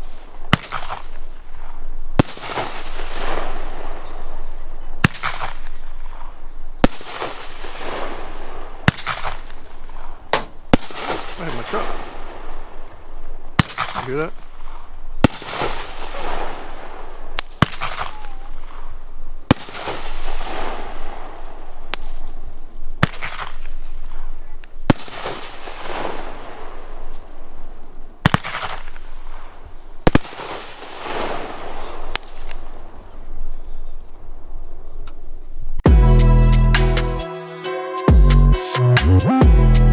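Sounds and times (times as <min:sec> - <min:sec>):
firework hiss: 0:00.0 - 0:35.4
firework shell bangs: 0:05.0 - 0:22.1.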